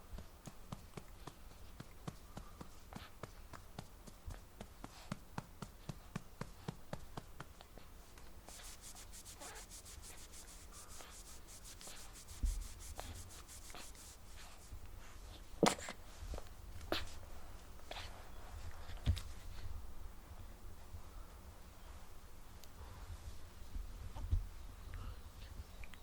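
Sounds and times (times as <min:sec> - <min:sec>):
rubbing on clothing: 0:08.4 - 0:14.8.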